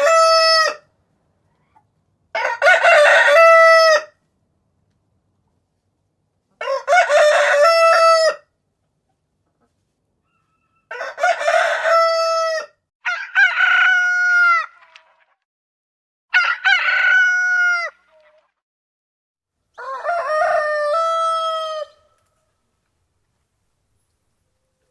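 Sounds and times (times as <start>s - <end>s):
roosters crowing: 0.0s - 0.8s, 2.3s - 4.2s, 6.6s - 8.5s, 10.4s - 14.8s, 16.3s - 18.1s, 19.7s - 22.2s.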